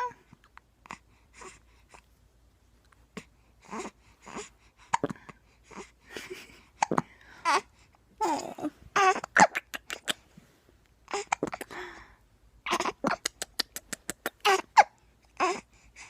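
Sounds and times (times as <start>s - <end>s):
baby whining: 0.0s - 0.3s, 7.4s - 9.4s, 14.4s - 15.7s
baby hiccuping: 4.9s - 5.4s, 8.2s - 10.2s, 11.1s - 11.7s, 12.6s - 13.6s, 14.2s - 15.6s
baby babbling: 7.4s - 9.6s, 11.1s - 11.7s, 12.7s - 13.3s, 14.3s - 15.7s.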